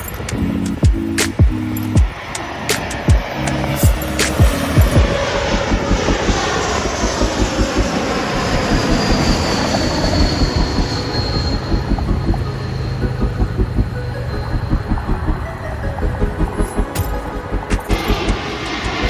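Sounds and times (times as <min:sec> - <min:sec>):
wind buffeting microphone: 0:00.0 - 0:14.0
jet plane passing overhead: 0:00.0 - 0:19.0.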